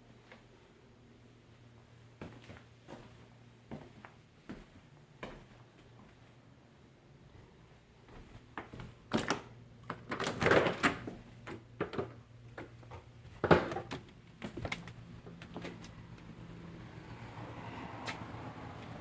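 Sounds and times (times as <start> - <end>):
doors opening and shutting: 8.6 - 16.4.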